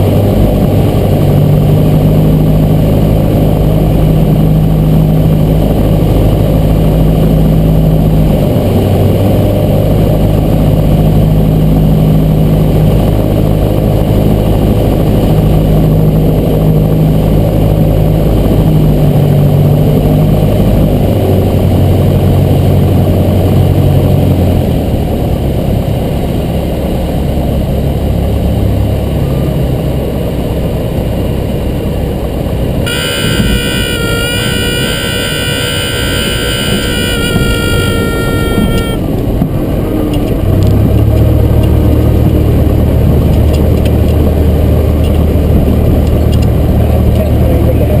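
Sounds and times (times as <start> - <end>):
piston engine droning: 32.8 - 47.9
high steady tone: 32.9 - 39.1.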